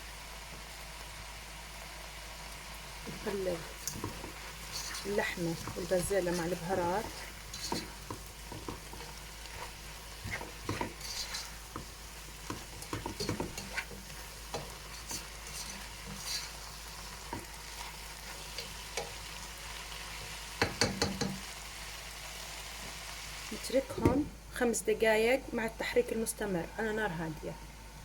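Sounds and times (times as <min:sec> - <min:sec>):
faint sizzle of frying: 0:00.0 - 0:28.0
utensil scraping a pot: 0:03.1 - 0:19.3.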